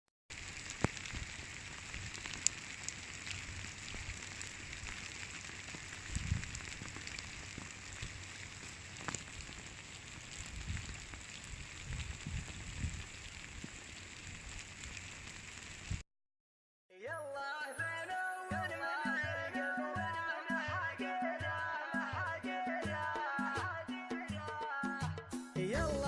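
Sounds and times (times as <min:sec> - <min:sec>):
rain falling steadily: 0:00.3 - 0:16.0.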